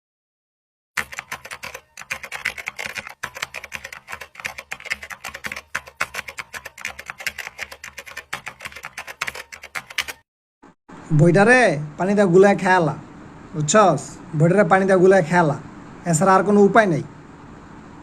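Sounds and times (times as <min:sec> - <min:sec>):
fast irregular clicking and tapping: 0:01.0 - 0:10.2.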